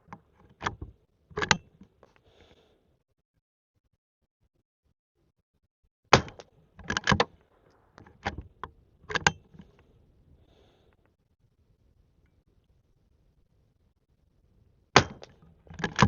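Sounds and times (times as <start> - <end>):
rifle action metallic clacks: 0.0 - 1.8, 6.2 - 7.3, 8.0 - 9.8, 15.0 - 16.0.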